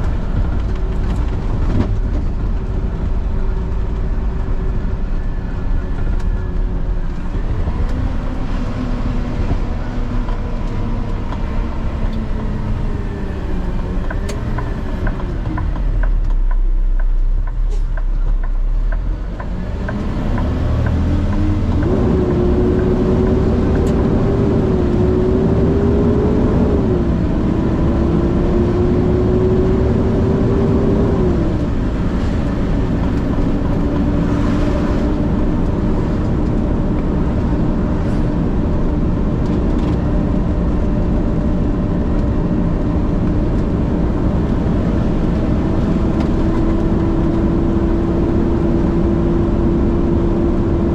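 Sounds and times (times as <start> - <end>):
diesel truck engine accelerating: 0.0 - 50.9.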